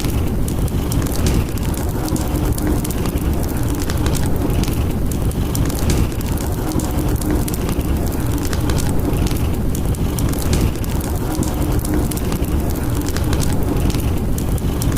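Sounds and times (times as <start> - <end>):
fire crackling and popping: 0.0 - 14.9
storm wind rumble: 0.0 - 14.9.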